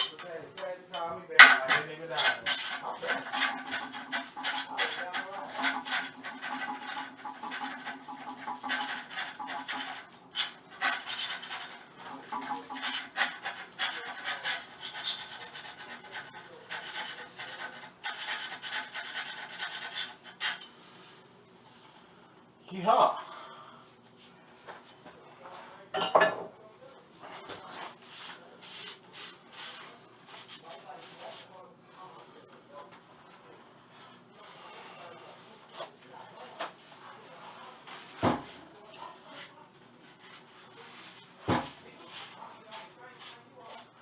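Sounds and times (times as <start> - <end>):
scrubbing strokes: 1.7 - 21.2.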